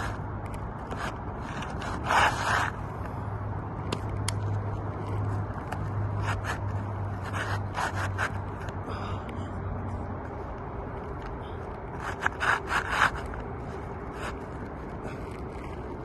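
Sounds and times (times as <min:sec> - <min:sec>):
steady low hum: 0:00.0 - 0:16.0
short scraping strokes: 0:00.9 - 0:02.9, 0:06.1 - 0:08.7, 0:11.4 - 0:15.2.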